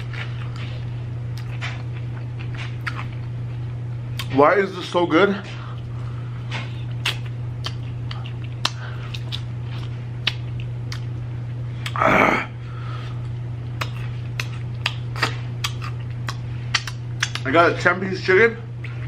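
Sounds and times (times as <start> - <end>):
chewing crunchy food: 0.0 - 4.4, 5.5 - 12.0, 13.2 - 17.5
clothes dryer hum: 0.0 - 19.0
mouth clicks: 13.8 - 17.5.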